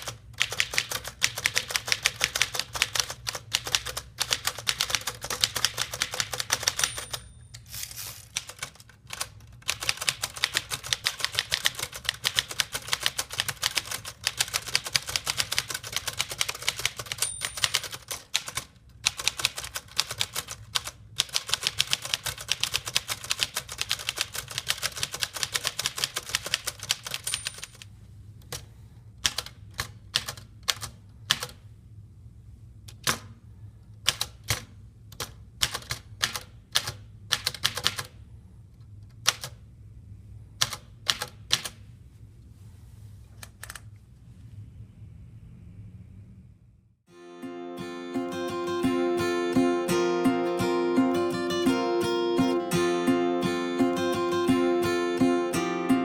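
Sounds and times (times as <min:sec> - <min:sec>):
typewriter margin bell: 0:00.0 - 0:08.6, 0:14.4 - 0:18.6, 0:21.3 - 0:27.9
typewriter typing clatter: 0:00.0 - 0:27.9, 0:29.2 - 0:31.6, 0:34.0 - 0:38.1, 0:40.6 - 0:41.8.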